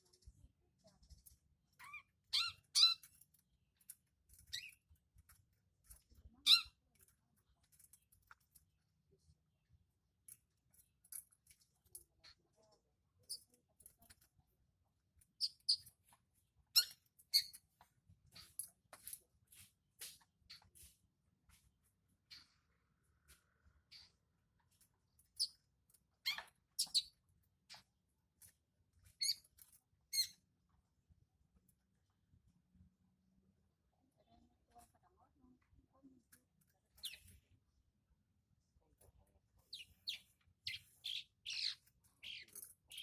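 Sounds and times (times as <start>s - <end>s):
bird chirping: 1.8s - 3.2s, 4.3s - 4.8s, 15.4s - 15.9s, 16.7s - 17.6s, 25.2s - 25.6s, 26.2s - 27.8s, 29.2s - 29.5s, 37.0s - 37.4s, 39.6s - 43.0s.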